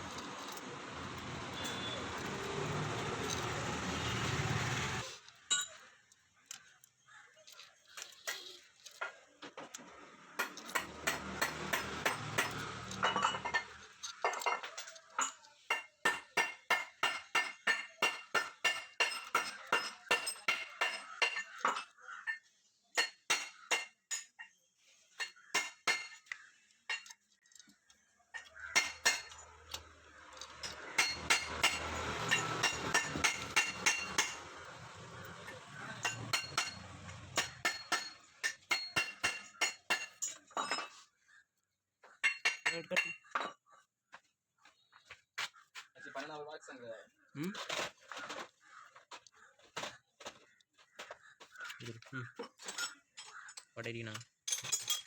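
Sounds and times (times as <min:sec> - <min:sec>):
metal tools clinking on metal: 0:00.0 - 0:05.9, 0:07.5 - 0:22.4, 0:28.4 - 0:41.1, 0:42.2 - 0:43.6, 0:52.3 - 0:55.0.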